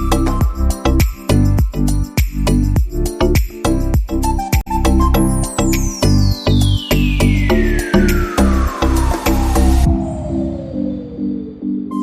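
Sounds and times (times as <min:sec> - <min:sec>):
electronic music with beat: 0:00.0 - 0:10.0, 0:10.8 - 0:12.0
long falling sweep: 0:07.0 - 0:12.0.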